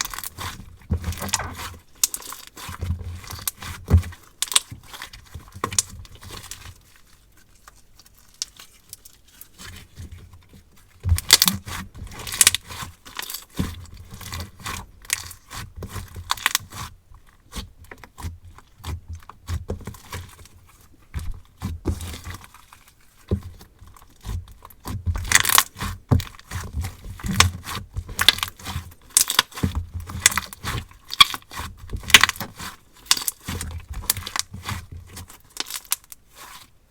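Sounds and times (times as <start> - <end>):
hands squishing slime: 0.1 - 2.8.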